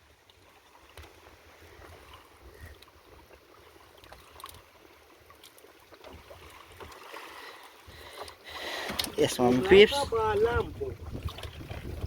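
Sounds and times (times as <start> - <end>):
water lapping around a boat: 0.0 - 12.0
low wind rumble: 9.6 - 12.0.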